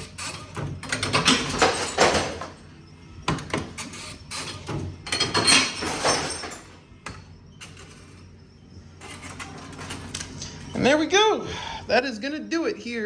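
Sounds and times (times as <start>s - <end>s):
glass bottles clunking and clattering: 0.0s - 2.7s, 3.3s - 8.2s.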